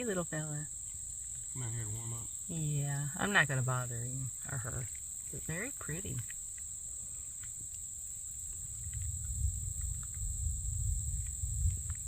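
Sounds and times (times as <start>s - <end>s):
crickets chirping: 0.0s - 12.0s
low rumble: 8.6s - 12.0s.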